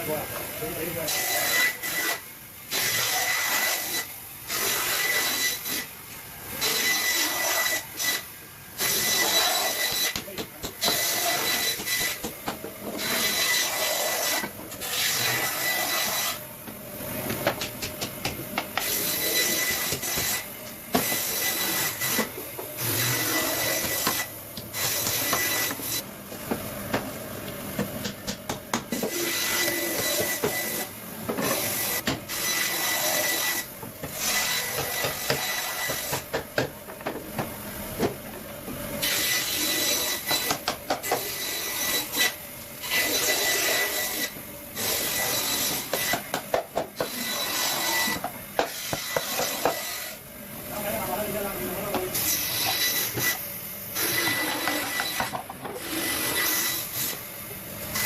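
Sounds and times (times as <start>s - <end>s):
rough rasping and scraping: 8.8s - 12.2s, 12.8s - 16.4s, 47.0s - 50.2s, 54.0s - 56.9s.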